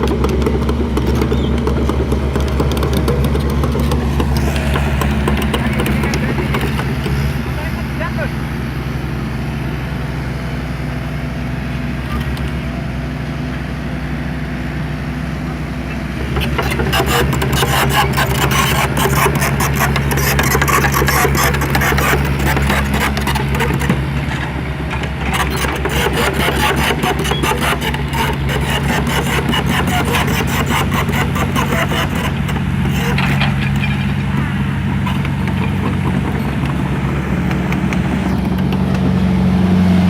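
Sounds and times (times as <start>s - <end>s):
rattling and crunching: 0.0s - 8.4s, 16.1s - 39.2s
vehicle engine running: 0.0s - 40.0s.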